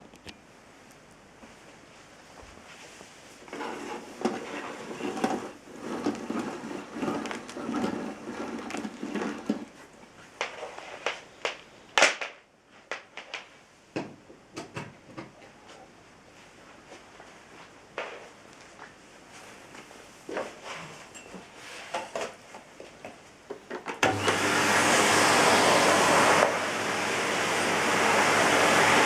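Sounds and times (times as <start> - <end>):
rustling and scraping: 1.4 - 11.7.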